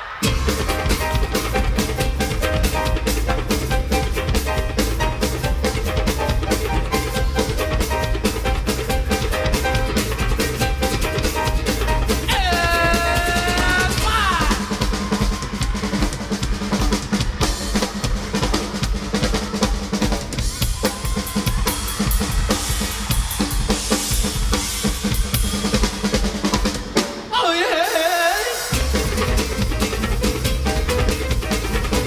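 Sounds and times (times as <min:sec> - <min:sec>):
dance music with drum beat: 0:00.0 - 0:32.0
bass line: 0:00.2 - 0:16.4, 0:28.7 - 0:32.0.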